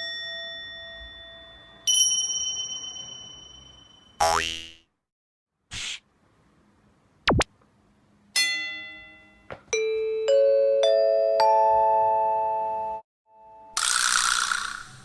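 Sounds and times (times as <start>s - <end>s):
bell-like ding: 0.0s - 4.2s, 8.4s - 10.2s.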